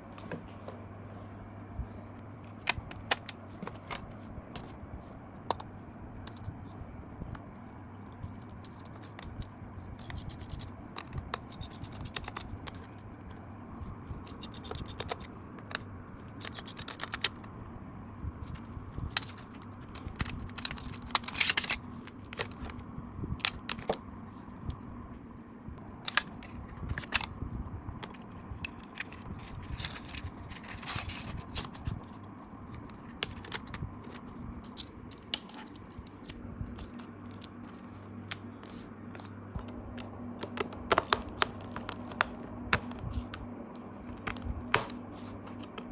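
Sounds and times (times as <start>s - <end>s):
steady low hum: 0.0s - 45.9s
scraping and scratching: 28.0s - 39.8s.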